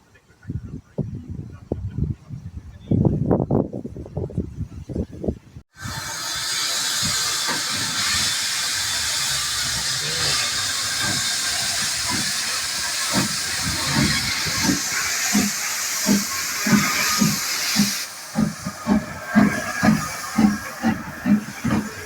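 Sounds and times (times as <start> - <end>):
steam locomotive hissing: 5.7 - 22.0.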